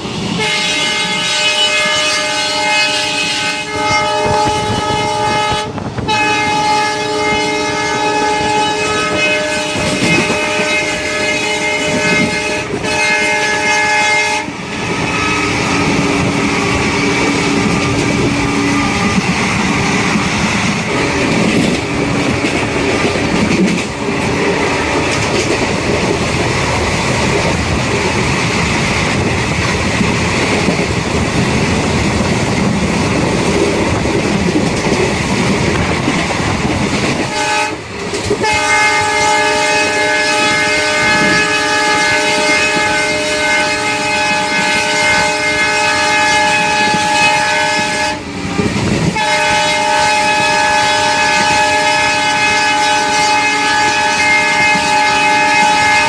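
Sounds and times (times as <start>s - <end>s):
train wheels clattering on rails: 0.0s - 56.0s
train horn: 0.3s - 26.0s, 37.1s - 56.0s.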